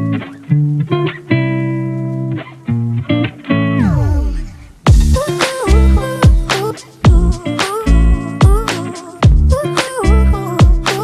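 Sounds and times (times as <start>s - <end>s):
plucked guitar-like music: 0.0s - 11.0s
sharp hit: 3.8s - 6.6s.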